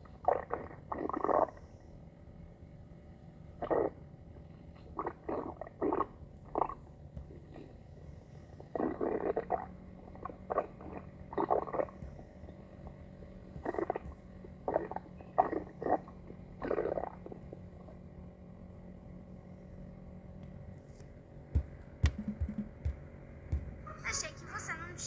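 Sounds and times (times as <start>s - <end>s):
stomach growling: 0.0s - 1.9s, 3.5s - 18.2s.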